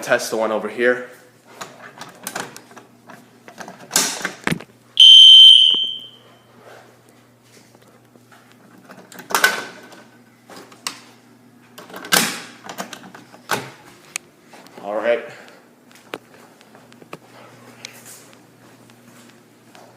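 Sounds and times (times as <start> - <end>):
device handling knocks and rustling: 3.5 - 4.7
fire alarm beep: 5.0 - 6.4.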